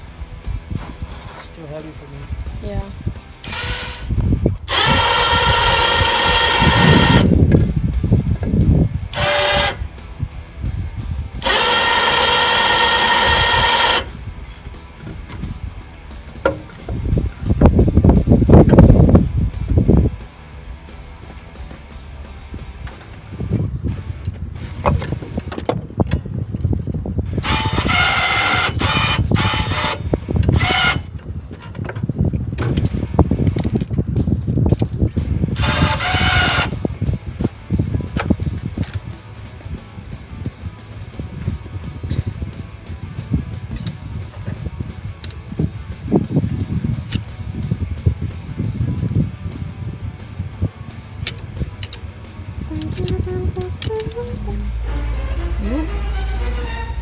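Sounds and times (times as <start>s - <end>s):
power tool whining: 2.3s - 34.0s, 35.5s - 39.8s, 51.2s - 57.0s
metal knocking and clanking: 11.4s - 19.0s
metal knocks and clanks: 14.6s - 23.3s
low rumble: 52.6s - 57.0s.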